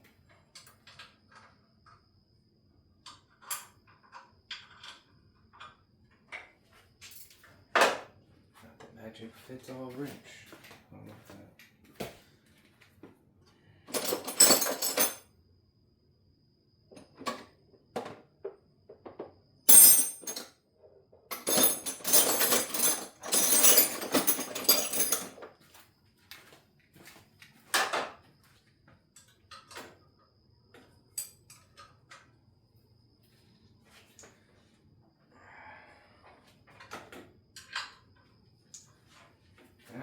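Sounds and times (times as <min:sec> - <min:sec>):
metal hand tools clattering: 0:13.9 - 0:15.2, 0:19.7 - 0:20.4, 0:21.4 - 0:25.4.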